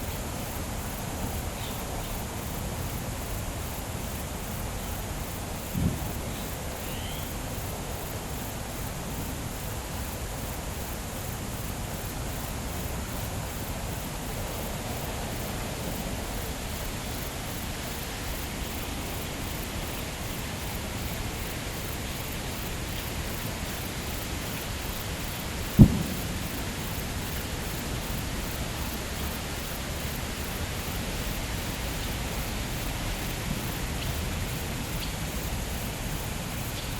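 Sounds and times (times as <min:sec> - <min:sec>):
steady hiss: 0:00.0 - 0:36.9.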